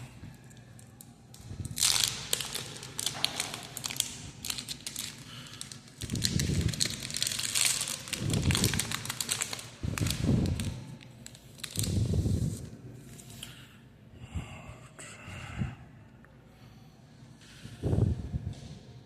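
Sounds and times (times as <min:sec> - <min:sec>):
foil wrapper crinkling and tearing: 0:01.6 - 0:12.6.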